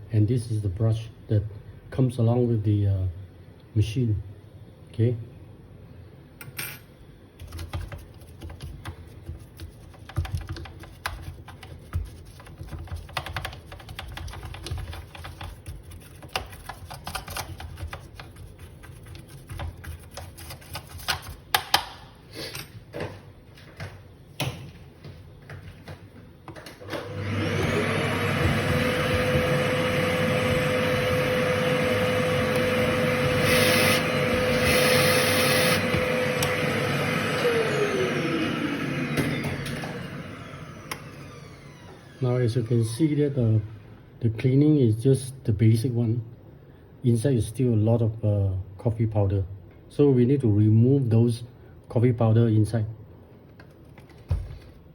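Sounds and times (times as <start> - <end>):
electric motor whirring: 27.1 - 42.2.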